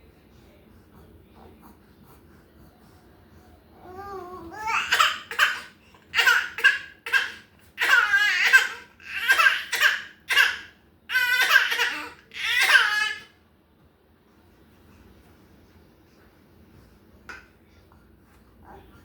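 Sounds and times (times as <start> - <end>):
baby fake crying: 3.9 - 13.3.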